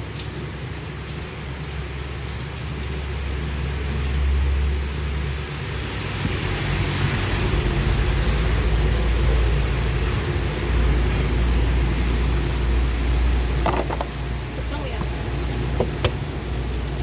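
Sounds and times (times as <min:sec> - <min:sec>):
gas burner flame rumbling: 0:04.2 - 0:17.0.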